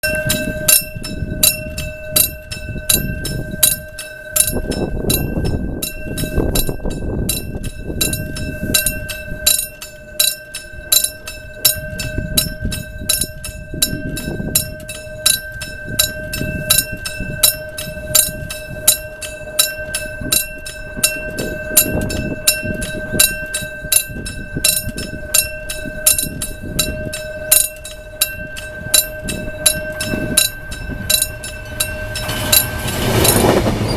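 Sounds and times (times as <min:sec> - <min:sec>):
level-crossing warning bell: 0:00.0 - 0:33.9
low rumble: 0:29.2 - 0:33.9.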